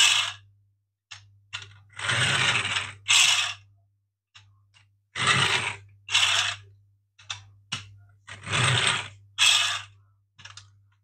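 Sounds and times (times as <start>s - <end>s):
plastic toy car rasping and clicking: 0.0s - 0.5s, 1.1s - 3.7s, 5.1s - 7.5s, 8.2s - 11.0s.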